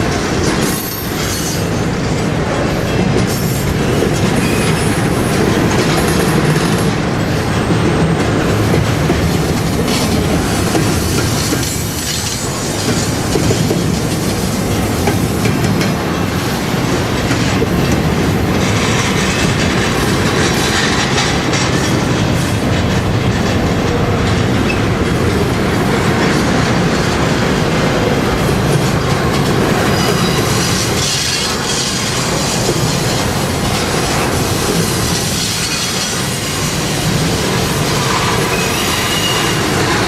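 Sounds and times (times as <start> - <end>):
train wheels clacking over rail joints: 0.0 - 40.0
train wheel squeal: 0.6 - 1.8, 2.9 - 5.3, 29.8 - 33.4, 34.1 - 40.0.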